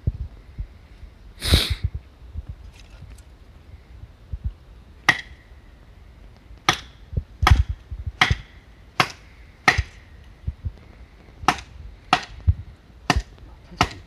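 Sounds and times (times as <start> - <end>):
metal tool striking firewood: 13.1 - 14.0.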